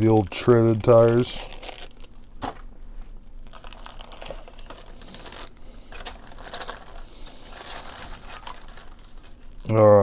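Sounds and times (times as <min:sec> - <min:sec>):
plastic parts clicking and rattling: 0:03.5 - 0:09.7.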